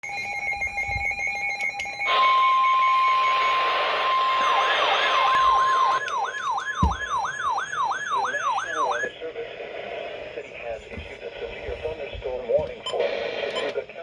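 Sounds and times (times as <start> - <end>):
warbling siren: 0.1 - 9.1
rapidly pulsing alert tones: 2.5 - 9.1.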